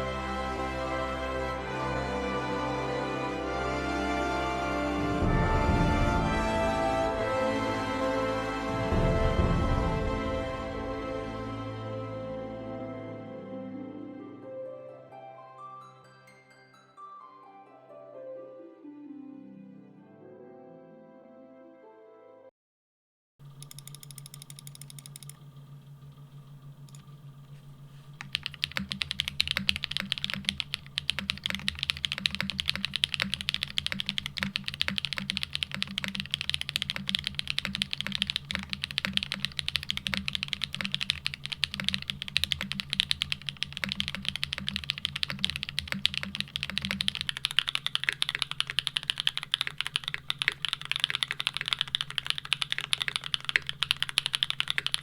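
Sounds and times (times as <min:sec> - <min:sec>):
steady low hum: 0:23.4 - 0:55.0
fast typing on mechanical keyboard: 0:23.5 - 0:25.4, 0:28.2 - 0:55.0.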